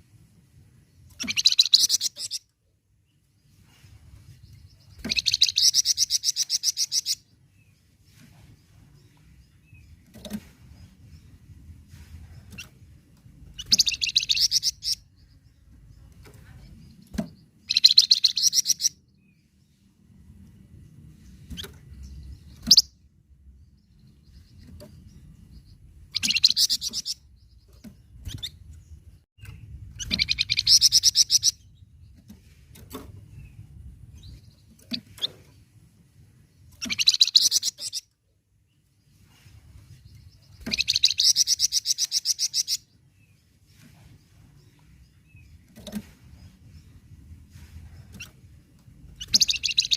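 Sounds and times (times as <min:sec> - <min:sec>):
songbird trilling: 0:01.1 - 0:02.5, 0:05.0 - 0:07.3, 0:13.6 - 0:15.2, 0:17.6 - 0:19.0, 0:26.1 - 0:27.2, 0:29.5 - 0:31.6, 0:36.8 - 0:38.1, 0:40.6 - 0:42.9, 0:49.2 - 0:49.9.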